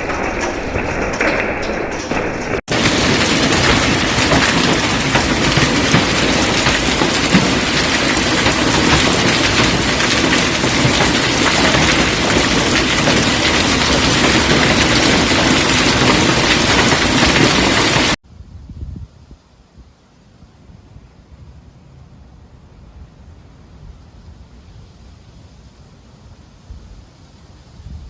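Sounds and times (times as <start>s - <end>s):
hail and rain on hard surfaces: 0.0s - 18.2s.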